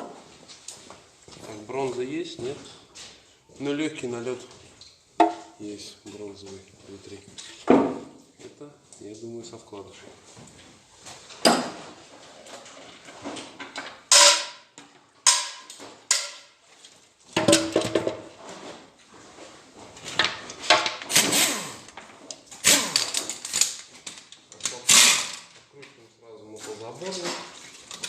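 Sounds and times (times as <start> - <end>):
metal parts clanking: 13.5 - 14.6, 22.6 - 25.5.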